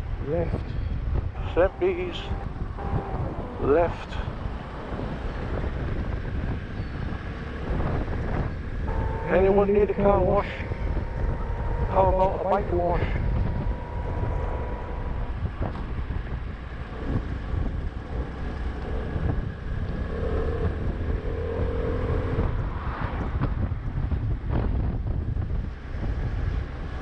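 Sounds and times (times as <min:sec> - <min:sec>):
vehicle engine and road rumble: 0:00.0 - 0:27.0
wind buffeting microphone: 0:00.5 - 0:20.0.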